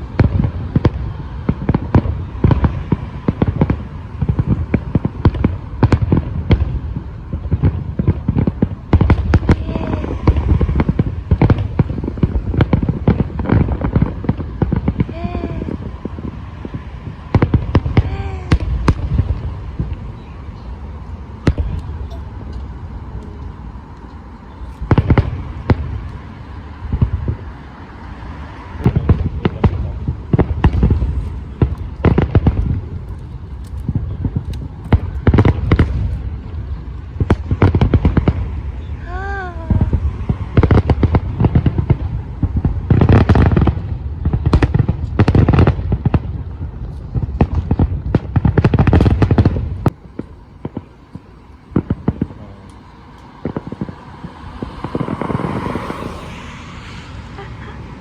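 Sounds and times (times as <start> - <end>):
fireworks booming: 0.0 - 58.0
fireworks crackling: 0.0 - 58.0.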